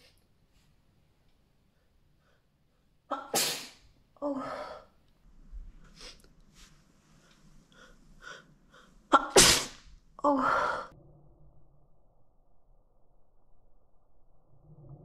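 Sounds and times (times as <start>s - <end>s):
woman sneezing: 3.1s - 3.8s, 9.1s - 9.8s
voiced breath: 4.4s - 9.1s, 10.3s - 11.0s.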